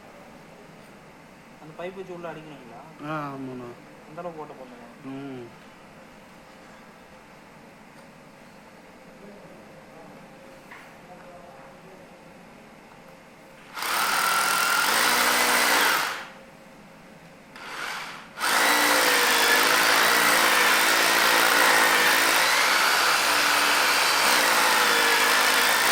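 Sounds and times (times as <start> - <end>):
electric drill boring into masonry: 13.7 - 16.4, 17.6 - 25.9.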